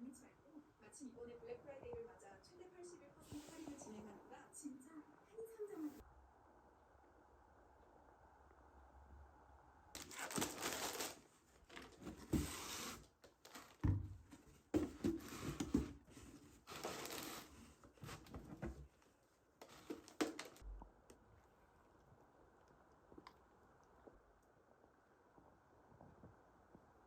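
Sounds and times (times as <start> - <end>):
rustling and scraping of handling: 10.0 - 20.6.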